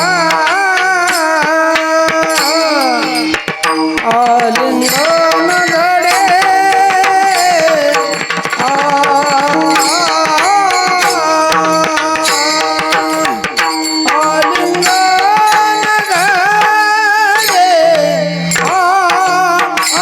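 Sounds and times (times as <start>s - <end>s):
man singing: 0.0s - 20.0s
sustained accompanying tones: 0.0s - 20.0s
tabla drumming: 0.0s - 20.0s.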